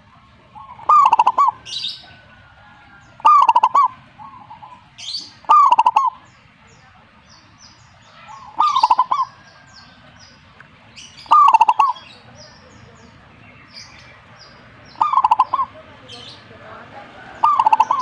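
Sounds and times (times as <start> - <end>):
dove cooing: 0.0 - 6.3, 8.1 - 10.1, 11.2 - 12.6, 14.9 - 18.0
small birds chirping: 0.0 - 18.0.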